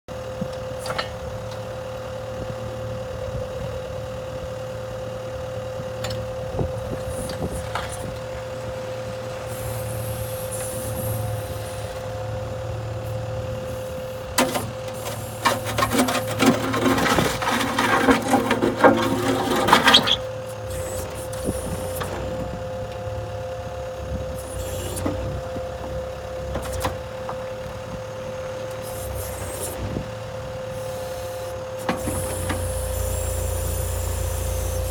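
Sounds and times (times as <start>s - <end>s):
engine hum with whine: 0.1s - 34.9s
clattering and scraping: 14.4s - 22.3s.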